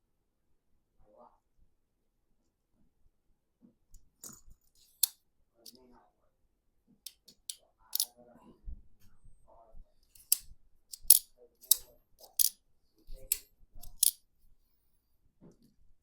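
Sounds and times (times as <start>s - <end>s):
metallic clicks of knife parts: 7.1s - 8.1s, 10.2s - 12.6s, 13.2s - 14.2s.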